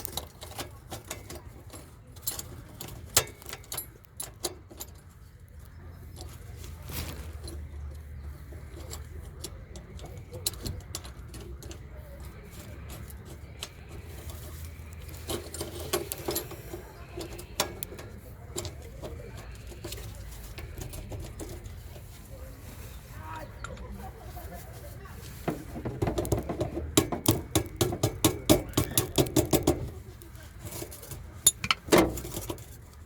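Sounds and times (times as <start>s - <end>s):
sharp clicks and light clinks: 0.0s - 22.0s.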